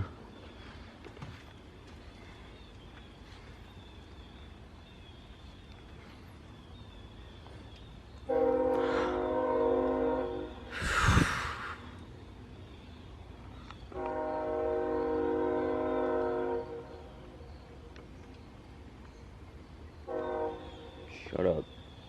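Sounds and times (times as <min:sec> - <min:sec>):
low background rush: 0:00.0 - 0:22.0
train horn chord: 0:08.3 - 0:10.7, 0:13.9 - 0:17.2, 0:20.1 - 0:21.2.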